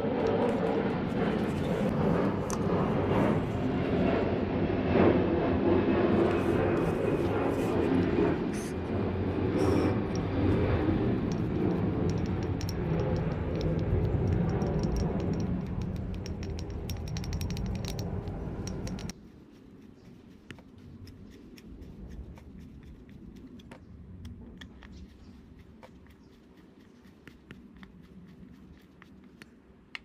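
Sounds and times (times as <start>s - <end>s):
parts clicking and rattling: 11.2s - 19.2s.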